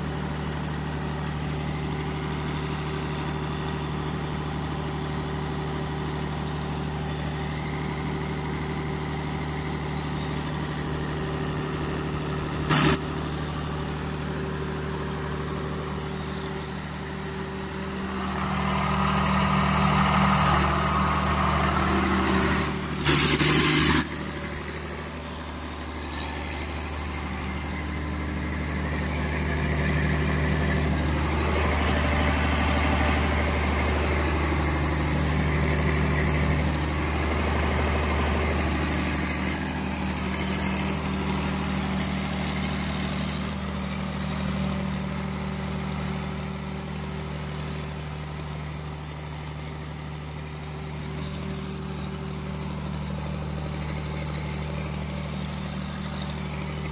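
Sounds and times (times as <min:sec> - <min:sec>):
diesel generator running: 0:00.0 - 0:56.9
loud burst of noise: 0:12.7 - 0:13.0, 0:22.7 - 0:24.5.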